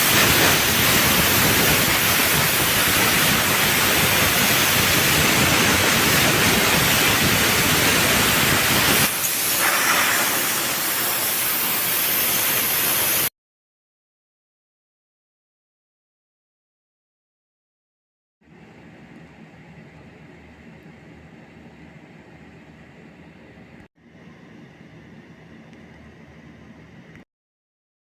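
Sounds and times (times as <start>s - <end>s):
plasma cutter hissing: 0.0s - 13.3s.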